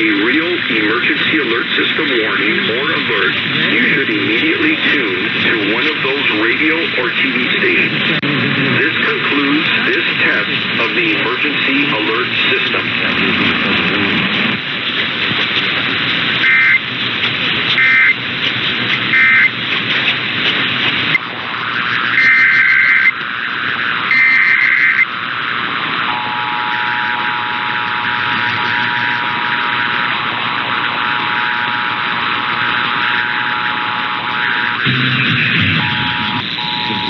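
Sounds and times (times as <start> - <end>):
radio hiss: 0.0 - 37.0
two-tone attention signal: 16.4 - 16.8, 17.8 - 18.2, 19.1 - 19.5, 22.1 - 23.2, 24.1 - 25.1, 26.0 - 37.0
data bursts: 16.4 - 16.9, 17.8 - 18.2, 19.0 - 19.6, 21.1 - 37.0.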